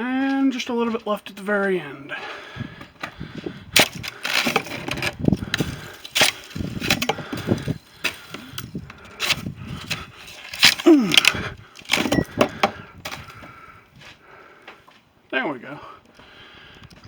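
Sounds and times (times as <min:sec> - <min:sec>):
broom striking ice: 0:03.8 - 0:05.0, 0:05.8 - 0:07.2, 0:10.3 - 0:11.0
ice cracking: 0:03.8 - 0:12.4.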